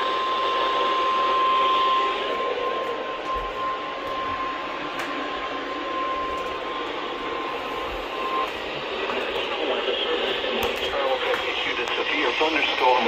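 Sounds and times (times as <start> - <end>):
steady alarm tone: 0.0 - 13.0
radio static hiss: 7.0 - 13.0.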